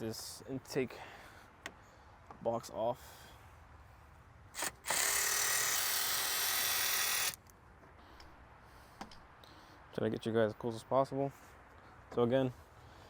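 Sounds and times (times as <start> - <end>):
cordless drill running: 4.6 - 7.4.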